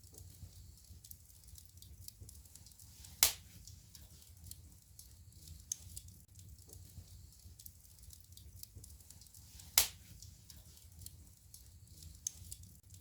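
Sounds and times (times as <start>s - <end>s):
wood fire crackling: 0.0s - 13.0s
loud sharp pop of fire: 3.2s - 3.5s, 9.8s - 10.1s.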